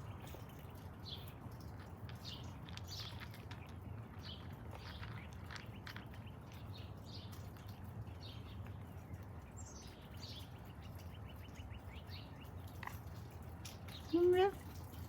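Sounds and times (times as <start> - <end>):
cat crunching dry kibble: 0.0 - 9.4, 12.6 - 15.0.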